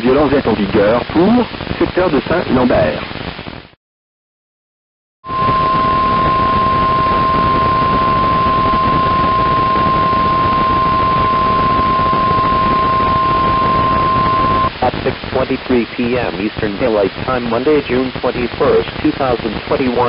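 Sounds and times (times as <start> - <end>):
radio static: 0.0 - 3.8, 5.3 - 20.0
steady loud warning beep: 5.3 - 14.7.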